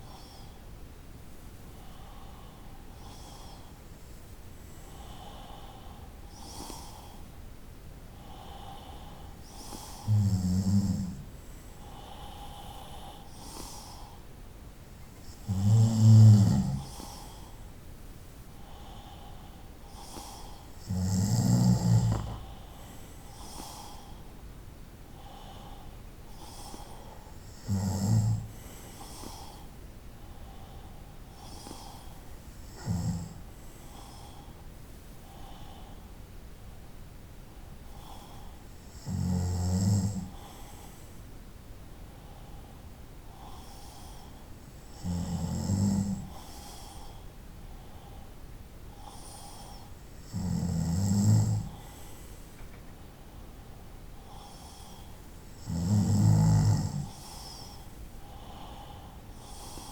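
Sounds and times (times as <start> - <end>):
person snoring: 9.5 - 14.0, 15.2 - 17.5, 19.9 - 24.1, 26.4 - 29.7, 32.6 - 34.3, 38.8 - 40.6, 44.9 - 47.1, 49.0 - 52.0, 54.3 - 59.9.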